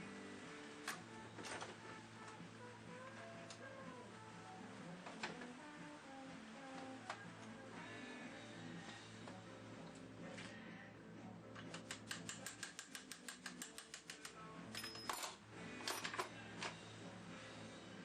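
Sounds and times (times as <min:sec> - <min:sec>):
quiet background music: 0:00.0 - 0:18.0
louder clicks and snaps: 0:11.6 - 0:14.4
small metallic clicks: 0:11.6 - 0:16.8.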